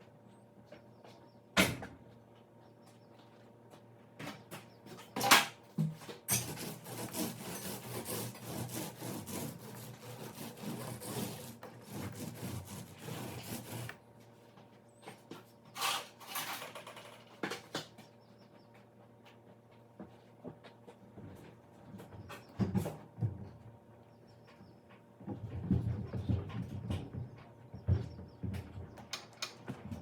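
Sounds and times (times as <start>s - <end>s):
scraping on wooden surface: 6.3s - 14.0s.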